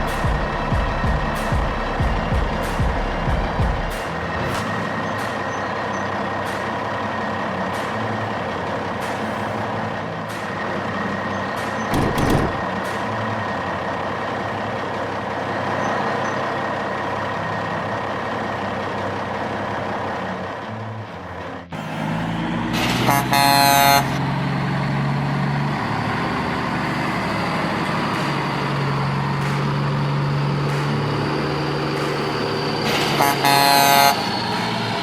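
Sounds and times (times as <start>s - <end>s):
heavy truck engine running: 0.0s - 35.0s
sharp knocks: 11.9s - 12.7s
loud burst: 11.9s - 12.8s.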